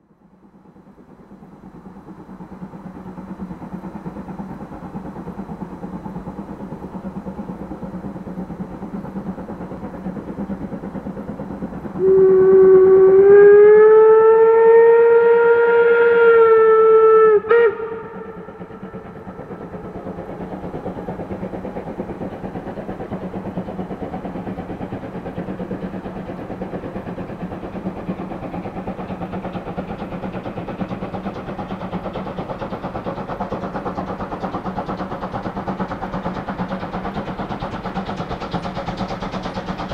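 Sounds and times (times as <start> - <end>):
steam locomotive exhaust beats: 0.0 - 39.9
steam whistle blast: 12.0 - 19.1.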